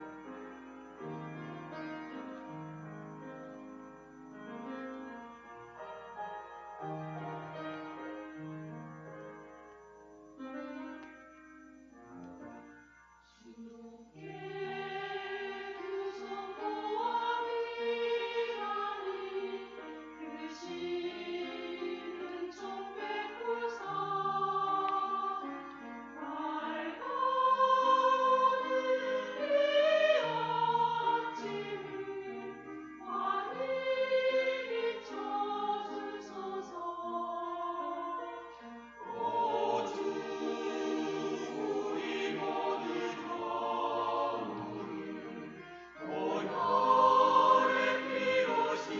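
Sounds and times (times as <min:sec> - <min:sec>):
church choir singing a hymn: 0:13.3 - 0:48.9.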